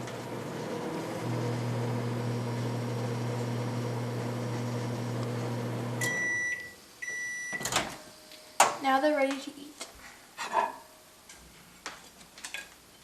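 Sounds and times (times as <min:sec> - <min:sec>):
microwave oven humming: 0:00.0 - 0:06.7
microwave beeps: 0:05.9 - 0:07.8.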